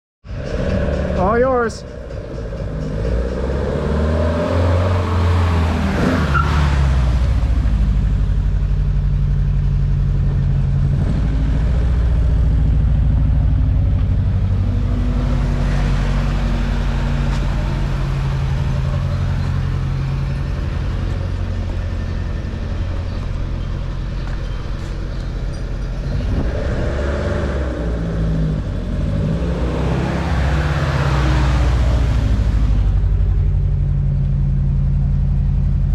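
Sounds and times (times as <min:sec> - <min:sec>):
car engine running: 0:00.3 - 0:35.9.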